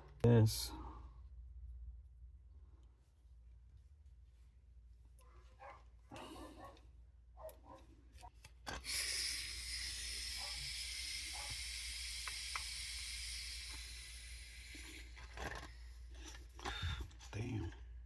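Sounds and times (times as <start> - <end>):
gas hissing from fitting: 8.7 - 16.9.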